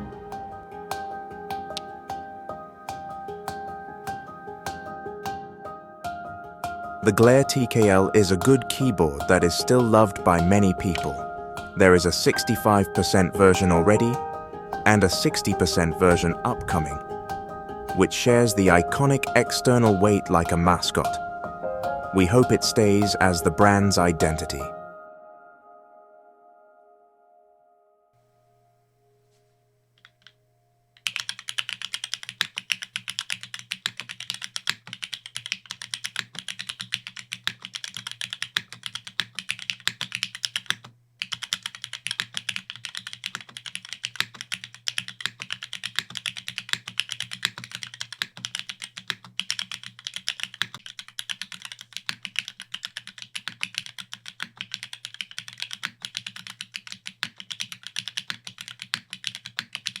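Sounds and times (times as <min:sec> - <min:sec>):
mechanical keyboard typing: 0:31.0 - 1:00.0.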